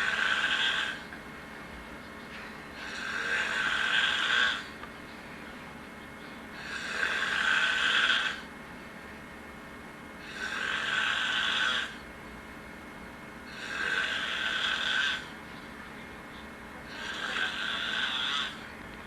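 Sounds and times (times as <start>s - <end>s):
person snoring: 0.0s - 1.1s, 2.7s - 4.7s, 6.6s - 8.5s, 10.2s - 12.0s, 13.5s - 15.3s, 16.8s - 18.6s
quiet breathing: 2.3s - 5.6s.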